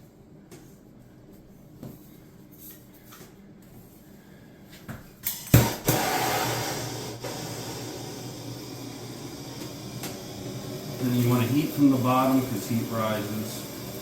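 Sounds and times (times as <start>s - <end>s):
torch lighting pop: 5.4s - 7.4s
torch flame hissing: 5.5s - 14.0s.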